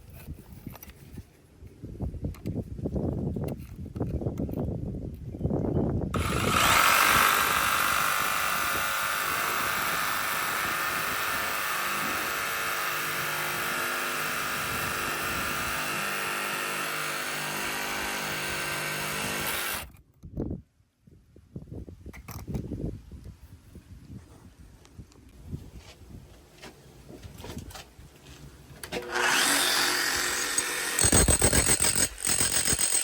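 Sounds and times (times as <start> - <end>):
power tool running: 6.2 - 19.9, 29.0 - 33.0.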